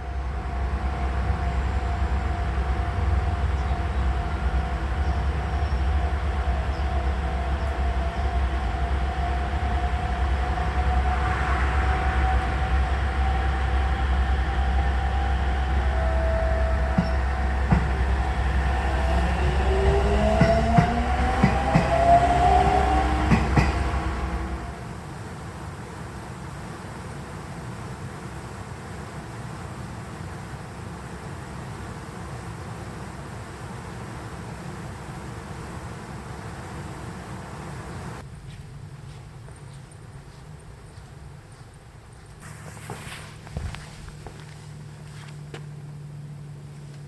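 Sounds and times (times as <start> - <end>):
high squeal: 0.0 - 24.9
constant whine: 0.0 - 47.0
train rumbling on rails: 0.0 - 47.0.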